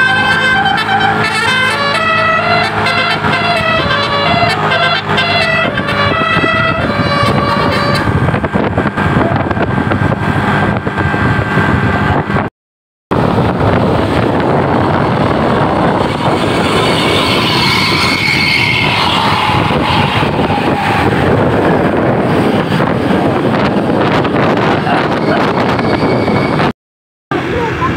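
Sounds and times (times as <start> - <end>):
bus horn playing a tune: 0.0 - 8.5, 15.4 - 21.5
bus engine: 0.0 - 12.5, 13.1 - 27.9
road noise: 0.0 - 12.5, 13.1 - 27.9.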